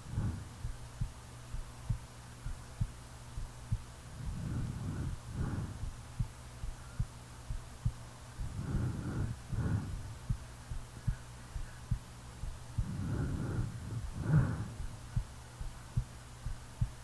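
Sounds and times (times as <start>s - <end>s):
heartbeat thumps: 0.0s - 17.0s
steady low hum: 0.0s - 17.0s
person snoring: 4.2s - 5.8s, 8.5s - 10.0s, 12.8s - 14.8s.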